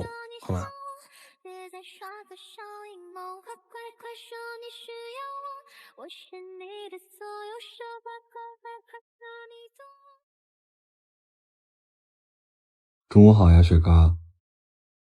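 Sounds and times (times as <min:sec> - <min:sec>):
song with high childlike singing: 0:00.0 - 0:09.9.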